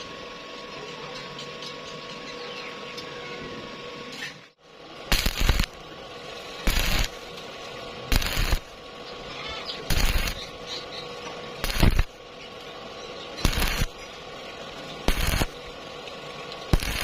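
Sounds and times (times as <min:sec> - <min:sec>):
welding machine humming: 0:00.0 - 0:17.0
welding arc crackle: 0:04.9 - 0:17.0.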